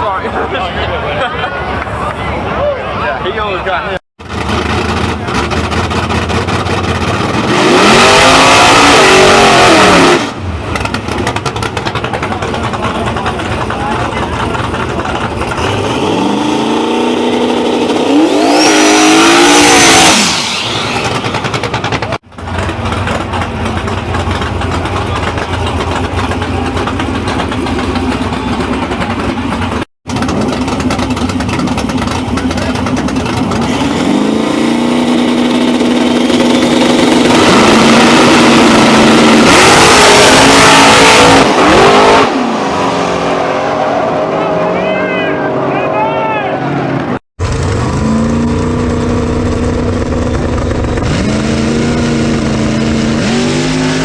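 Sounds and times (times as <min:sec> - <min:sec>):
race car engines at full throttle: 0:00.0 - 0:54.0.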